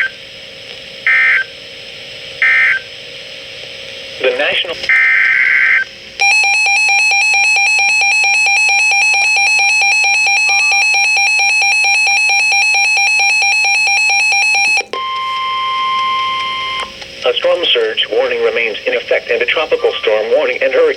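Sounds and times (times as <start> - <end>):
pulsing alarm tone: 5.0 - 16.9.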